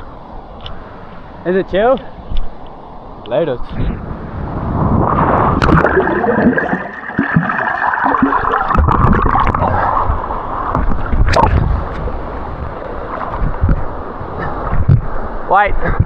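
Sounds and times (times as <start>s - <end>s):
water gurgling and churning: 4.0s - 15.5s.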